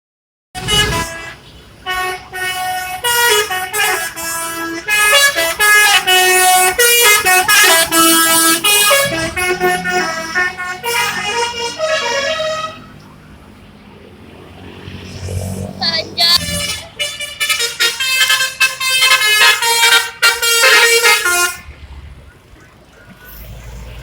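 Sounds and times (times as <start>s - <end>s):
multi-tone bus horn melody: 0.6s - 13.0s, 16.2s - 21.8s.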